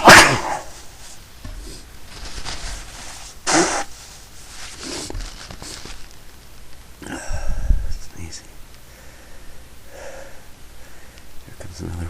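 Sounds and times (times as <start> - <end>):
person sneezing: 0.0 - 0.8, 3.4 - 3.9
sharp burst of breath: 8.9 - 11.2.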